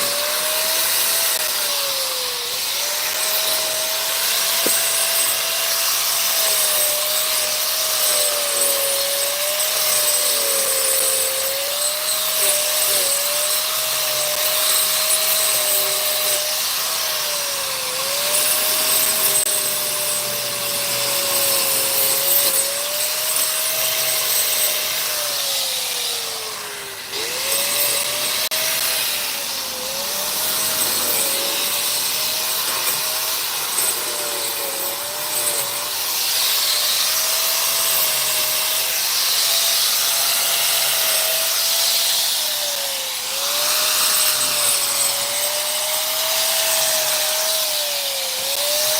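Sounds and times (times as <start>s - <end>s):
electric motor whine: 0.0s - 48.9s
loud rushing hiss: 14.5s - 42.5s.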